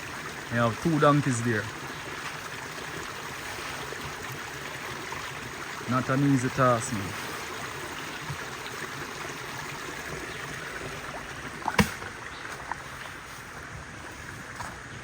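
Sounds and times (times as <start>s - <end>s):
river water flowing: 0.0s - 15.0s
sharp knock: 11.8s - 12.0s.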